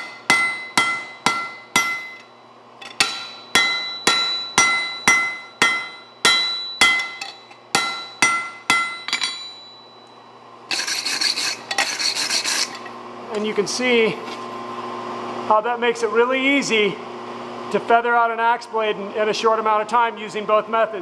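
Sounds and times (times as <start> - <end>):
hammer striking metal on anvil: 0.0 - 10.2.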